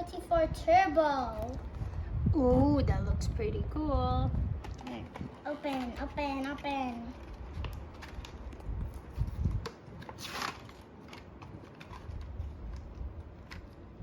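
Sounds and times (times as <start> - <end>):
packaging rustle: 4.6 - 14.0
plastic and cardboard crinkles: 4.6 - 14.0.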